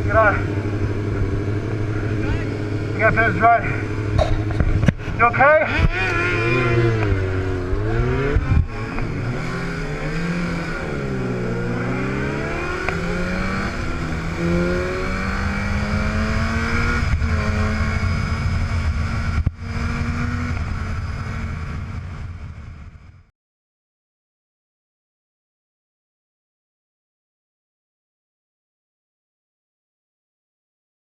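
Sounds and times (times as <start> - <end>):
motorcycle engines revving: 0.0 - 23.1.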